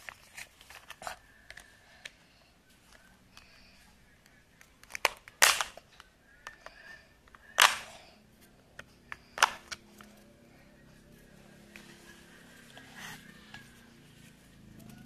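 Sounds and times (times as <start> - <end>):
plastic toy parts clicking: 4.6 - 7.9.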